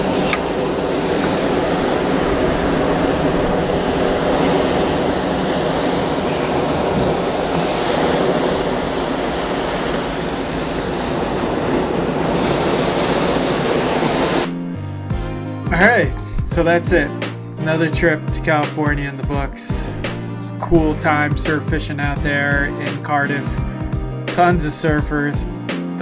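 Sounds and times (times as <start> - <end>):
wind buffeting microphone: 0.0 - 18.3, 19.7 - 21.4
ocean surf breaking: 0.0 - 26.0.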